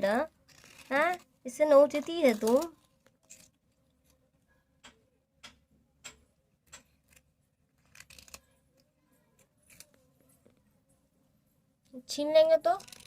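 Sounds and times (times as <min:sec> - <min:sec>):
cat crunching a biscuit: 0:07.8 - 0:08.6.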